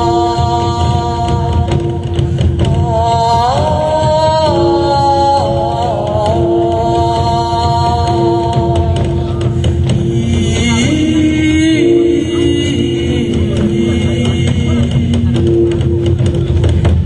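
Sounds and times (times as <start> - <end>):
long held melodic tones: 4.1 - 16.9.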